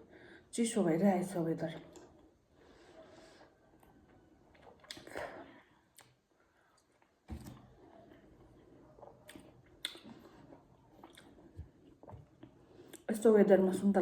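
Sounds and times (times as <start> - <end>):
faint chewing: 1.8 - 13.1
soft mouth clicks: 4.6 - 6.2, 9.2 - 10.3.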